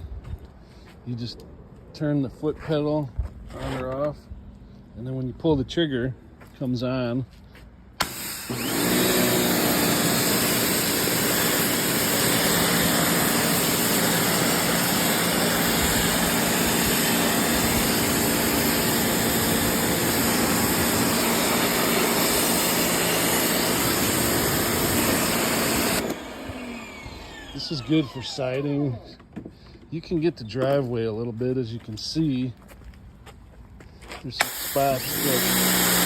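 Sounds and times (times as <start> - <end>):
pressure washer motor hum: 8.0 - 28.9, 34.4 - 36.0
water spray hissing: 34.4 - 36.0.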